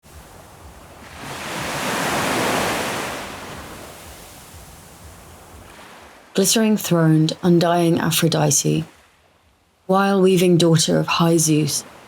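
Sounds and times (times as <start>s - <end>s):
ocean wave breaking: 0.0s - 9.4s.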